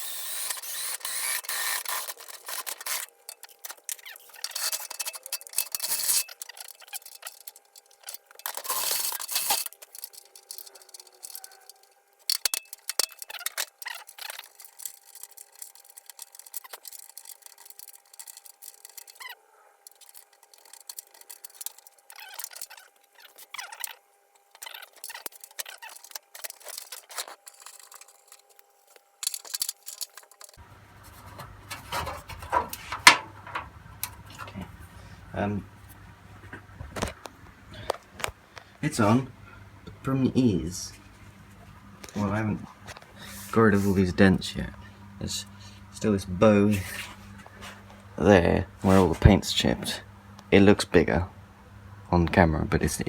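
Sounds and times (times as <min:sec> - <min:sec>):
clinks and taps on metal: 0:31.7 - 0:34.5.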